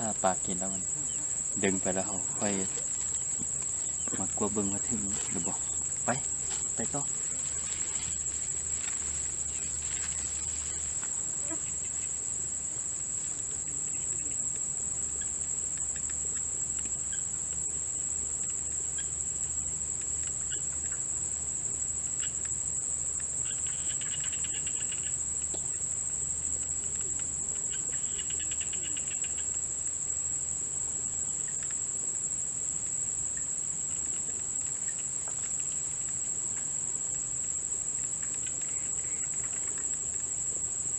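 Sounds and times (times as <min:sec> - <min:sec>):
crickets trilling: 0:00.0 - 0:40.9.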